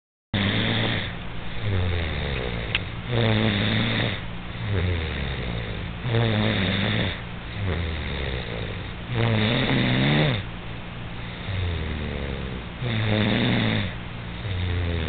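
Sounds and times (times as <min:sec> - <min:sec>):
boy snoring: 0:00.4 - 0:10.4, 0:11.3 - 0:15.0.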